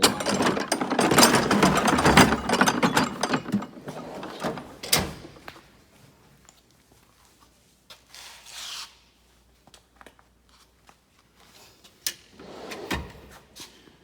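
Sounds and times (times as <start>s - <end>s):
metal tools clicking and knocking: 0.0s - 5.5s.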